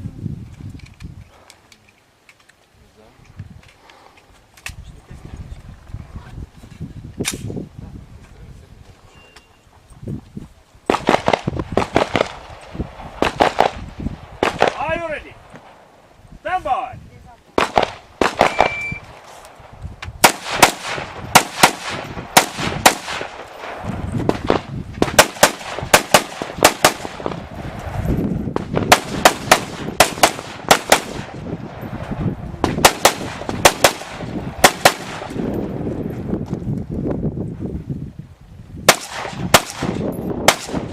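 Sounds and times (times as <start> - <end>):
rifle firing rapid shots: 10.9 - 12.5, 13.2 - 13.8, 14.4 - 14.8, 17.6 - 18.8, 20.2 - 23.5, 24.3 - 27.4, 28.6 - 31.4, 32.6 - 35.4, 38.9 - 40.9
shot timer beep: 18.5 - 19.1.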